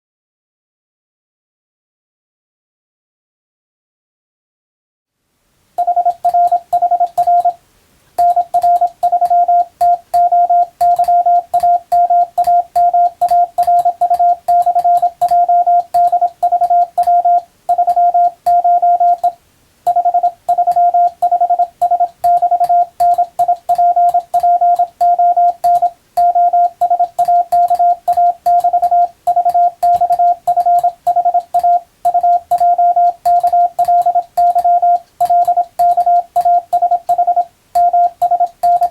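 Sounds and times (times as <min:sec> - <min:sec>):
morse code tone: 0:05.8 - 0:07.6, 0:08.2 - 0:38.9.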